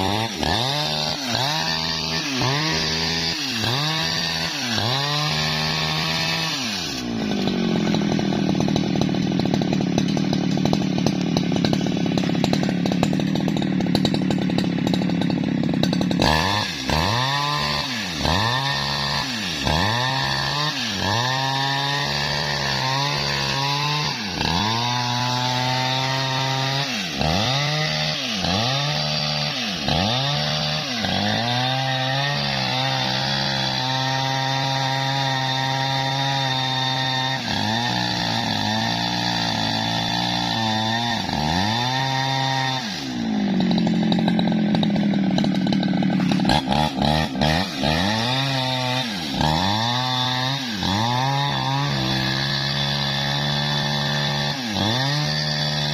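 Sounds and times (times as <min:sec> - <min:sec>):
chainsaw cutting log: 0:00.0 - 0:55.9.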